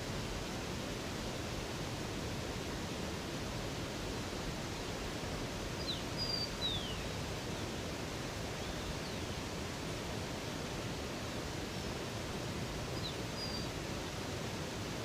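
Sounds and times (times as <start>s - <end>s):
river water rushing: 0.0s - 15.0s
bird chirping: 5.8s - 7.0s.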